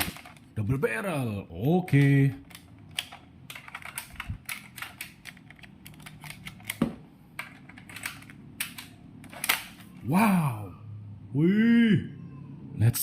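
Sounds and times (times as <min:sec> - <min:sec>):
plastic clicks and rattles: 0:00.0 - 0:00.6, 0:01.8 - 0:09.9.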